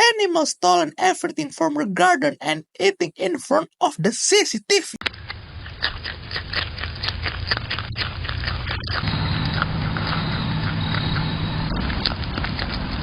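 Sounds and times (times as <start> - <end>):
animal crunching food: 5.0 - 13.0
low hum: 5.0 - 13.0.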